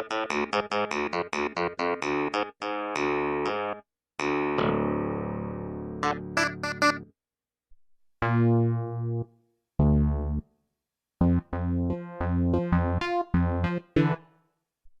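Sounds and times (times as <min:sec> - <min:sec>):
synthesizer chord and notes: 0:02.0 - 0:07.1, 0:08.2 - 0:10.4, 0:11.2 - 0:14.3.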